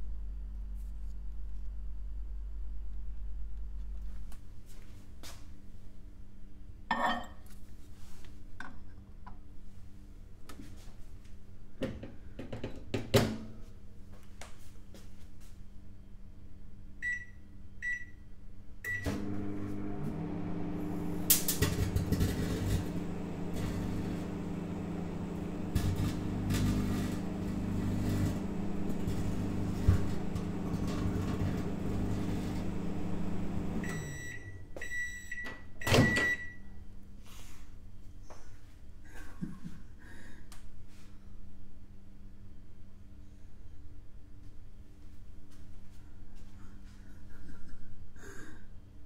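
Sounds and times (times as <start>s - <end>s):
microwave oven humming: 18.8s - 36.8s
microwave keypad beeping: 28.0s - 36.6s
end-of-cycle beeps: 31.2s - 36.6s.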